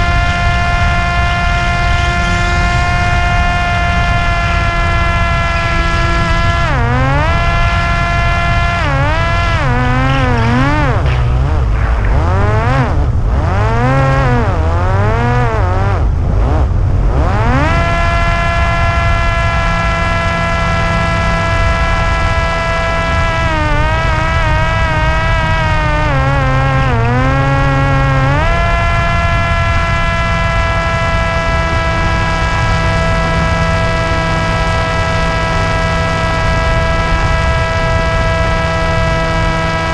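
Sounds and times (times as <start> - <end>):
electric motor and propeller whining: 0.0 - 39.9
wind rush on microphone: 0.0 - 39.9.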